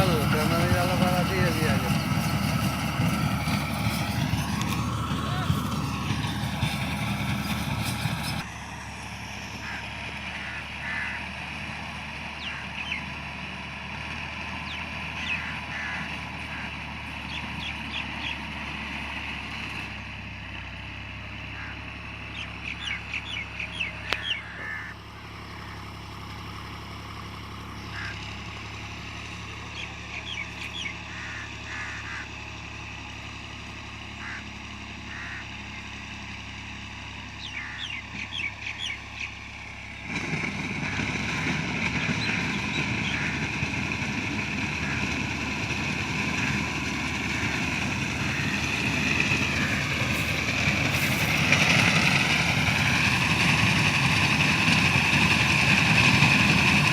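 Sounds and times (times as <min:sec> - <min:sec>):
loud machine noise: 0:00.0 - 0:36.0, 0:37.3 - 0:56.9
farm machinery engine running: 0:00.0 - 0:56.9
short bird calls: 0:09.6 - 0:11.3, 0:12.4 - 0:13.2, 0:14.6 - 0:18.5, 0:21.4 - 0:25.9, 0:27.7 - 0:28.2, 0:29.7 - 0:32.3, 0:34.2 - 0:34.4, 0:35.1 - 0:35.5, 0:37.4 - 0:39.4, 0:42.0 - 0:43.4.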